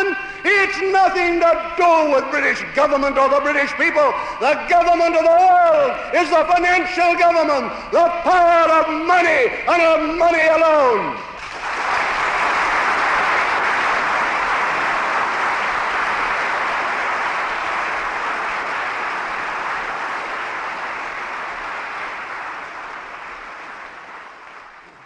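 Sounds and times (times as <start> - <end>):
audience applauding: 11.4 - 25.0.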